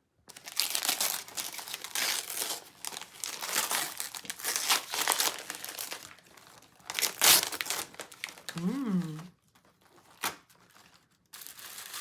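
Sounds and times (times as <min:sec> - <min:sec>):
wrapping paper crinkling: 0:00.3 - 0:12.0.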